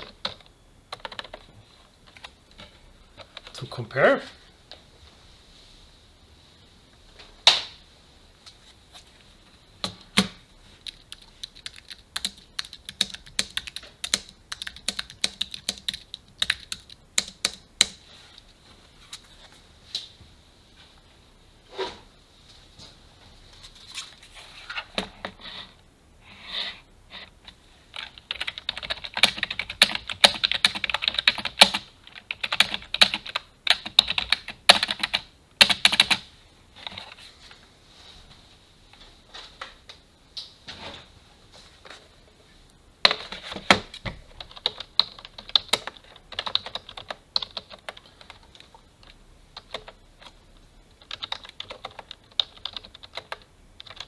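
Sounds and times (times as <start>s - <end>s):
typing on computer keyboard: 0.0s - 1.5s, 9.8s - 18.0s, 28.0s - 36.2s, 44.4s - 50.4s, 51.0s - 54.0s.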